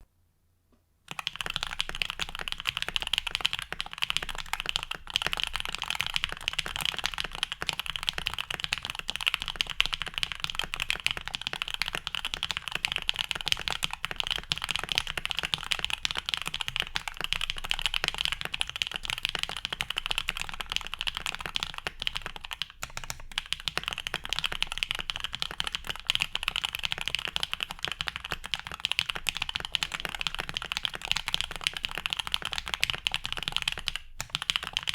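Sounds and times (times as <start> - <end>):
mechanical keyboard typing: 1.1 - 34.9.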